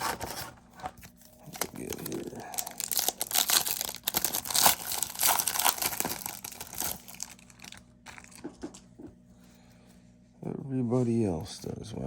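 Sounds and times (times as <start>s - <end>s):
plastic wrapper crinkling: 1.0s - 8.5s.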